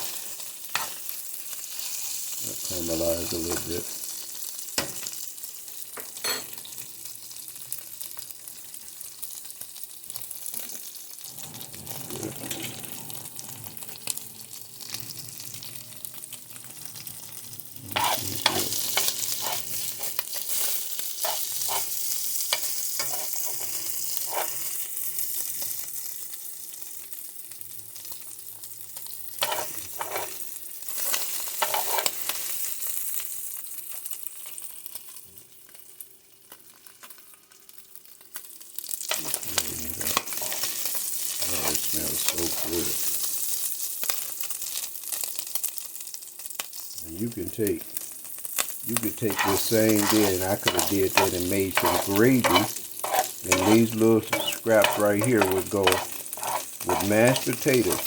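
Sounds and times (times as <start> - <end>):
meat sizzling in a frying pan: 0.0 - 58.0
utensil scraping a pan: 17.9 - 22.0, 22.6 - 24.6, 29.4 - 30.4, 31.0 - 32.2, 40.1 - 40.8, 49.0 - 58.0.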